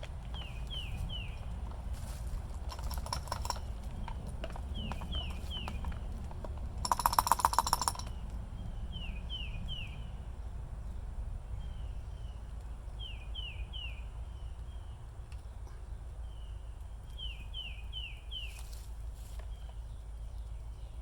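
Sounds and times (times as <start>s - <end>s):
bird calling: 0.0s - 6.1s
rapid rattle of clicks: 0.3s - 8.4s.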